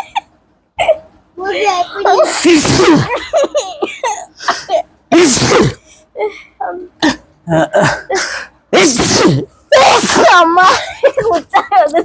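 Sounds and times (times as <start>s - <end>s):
laughter: 0.0s - 0.4s, 3.0s - 4.9s, 10.6s - 12.0s
loud sneezes: 2.2s - 3.2s, 5.1s - 5.9s, 8.7s - 10.8s.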